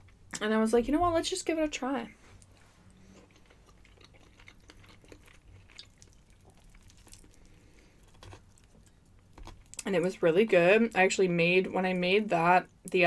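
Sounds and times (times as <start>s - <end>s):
chewing with wet mouth clicks: 2.4s - 9.9s.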